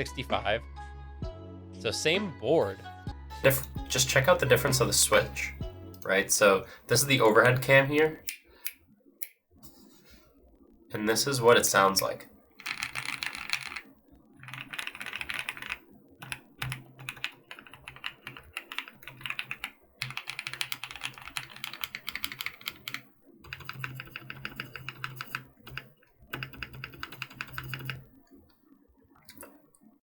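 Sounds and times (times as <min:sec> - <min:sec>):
typing on mechanical keyboard: 0:12.6 - 0:28.1.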